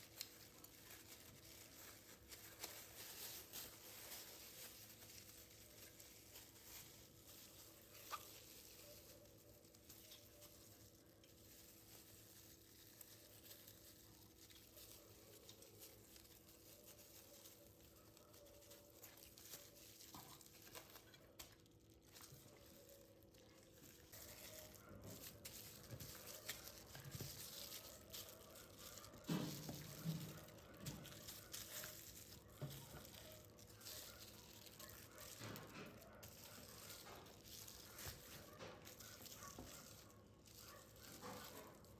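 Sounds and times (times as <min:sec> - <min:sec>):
knocks and handling sounds: 0:18.3 - 0:41.9.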